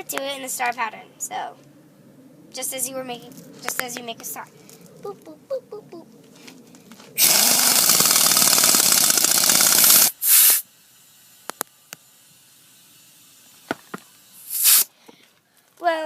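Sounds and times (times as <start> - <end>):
impact wrench hammering rattle: 7.2 - 10.2.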